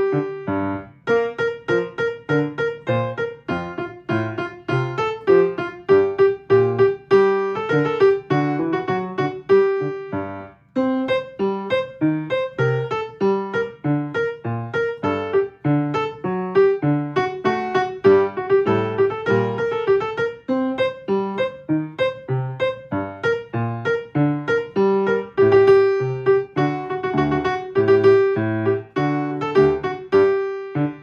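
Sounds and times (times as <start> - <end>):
piano playing: 0.0 - 31.0.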